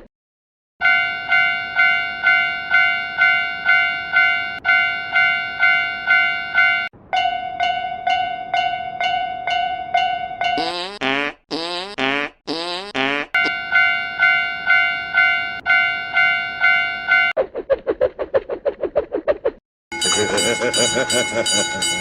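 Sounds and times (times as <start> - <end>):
railroad crossing warning bell: 0.8 - 10.6, 13.4 - 17.4, 19.9 - 22.0.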